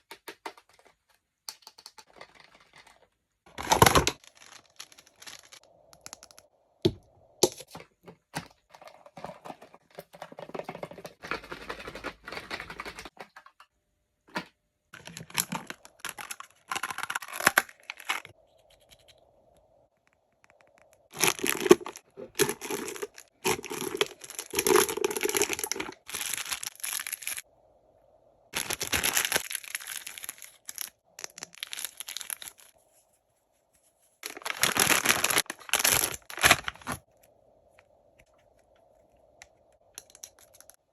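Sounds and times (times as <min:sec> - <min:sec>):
packaging tearing and crinkling: 0:03.6 - 0:05.6, 0:15.0 - 0:18.3, 0:21.1 - 0:27.4, 0:28.6 - 0:32.7, 0:34.2 - 0:37.1.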